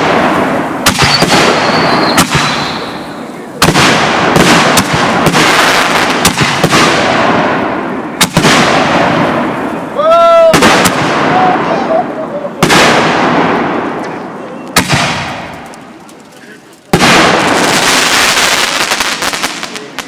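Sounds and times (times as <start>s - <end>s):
fireworks bangs: 0.0s - 20.0s
fireworks crackling: 0.0s - 20.0s
faint high whistle: 1.2s - 2.9s.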